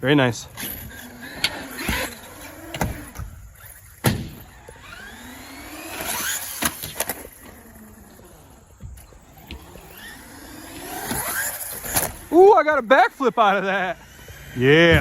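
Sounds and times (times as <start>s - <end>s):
electric motor whining: 0.5s - 15.0s
truck thumping on ground: 4.0s - 4.5s.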